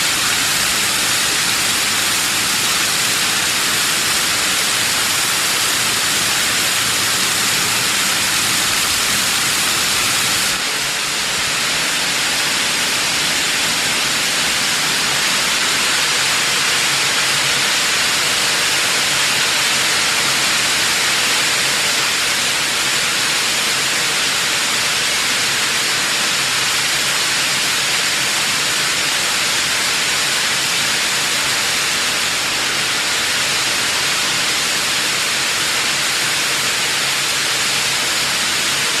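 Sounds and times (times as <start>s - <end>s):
waterfall spray hissing: 0.0s - 20.8s.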